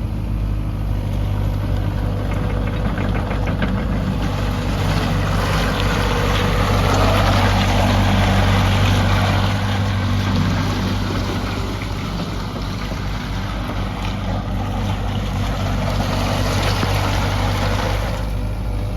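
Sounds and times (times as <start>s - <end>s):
excavator diesel engine running: 0.0s - 18.9s.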